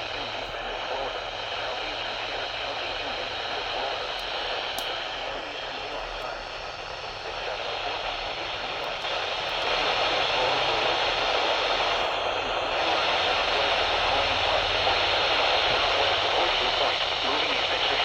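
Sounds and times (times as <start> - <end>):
radio static hiss: 0.0 - 18.0.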